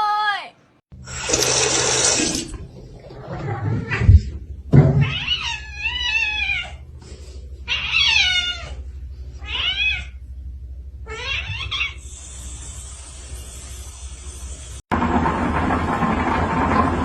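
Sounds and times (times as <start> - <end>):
cat meowing: 5.0 - 6.8, 7.7 - 8.8, 9.4 - 10.2, 11.1 - 12.0.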